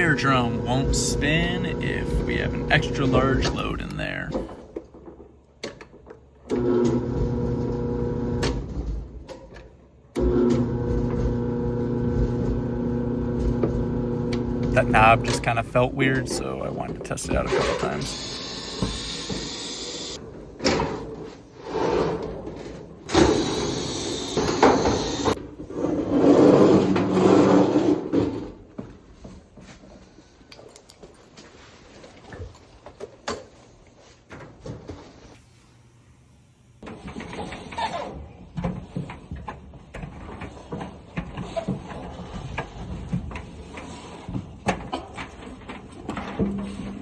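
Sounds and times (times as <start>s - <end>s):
dryer rushing rumbling noise: 0.0s - 4.5s, 10.7s - 18.0s.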